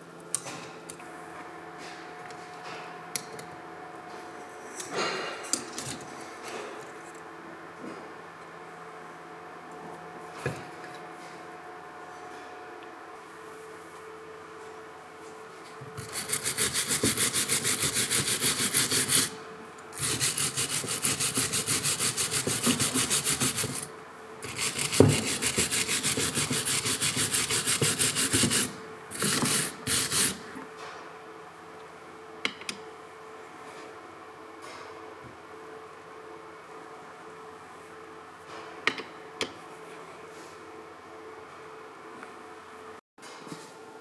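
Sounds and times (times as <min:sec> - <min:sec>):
hand tool rubbing back and forth: 0:16.0 - 0:19.4, 0:20.0 - 0:30.4.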